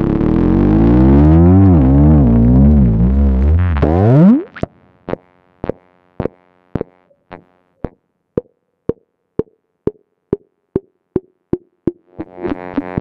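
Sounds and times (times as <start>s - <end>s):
synthesizer blips: 0.0s - 4.7s.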